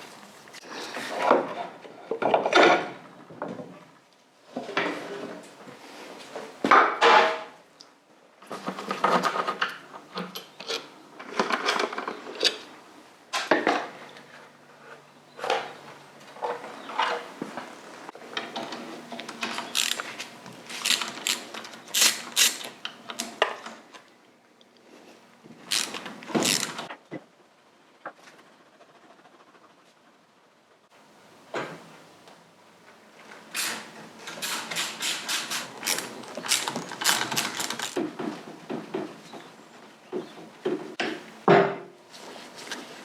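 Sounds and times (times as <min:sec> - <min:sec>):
hand tools and metal parts clattering: 0:18.3 - 0:23.9, 0:25.6 - 0:26.9, 0:33.5 - 0:39.4.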